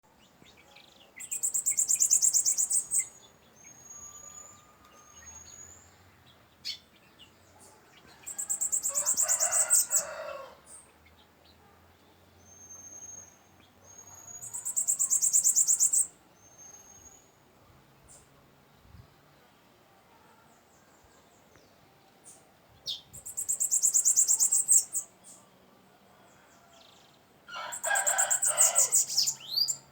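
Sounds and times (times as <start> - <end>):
rooster crowing: 8.1 - 10.6, 27.5 - 29.6.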